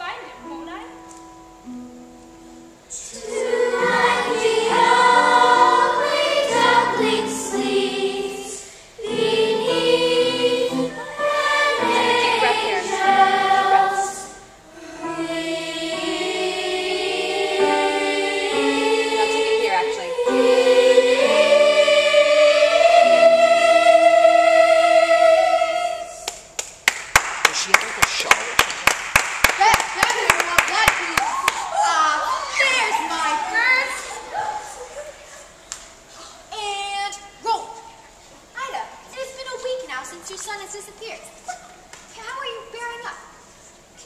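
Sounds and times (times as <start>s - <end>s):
chorus of voices singing: 2.9s - 26.3s.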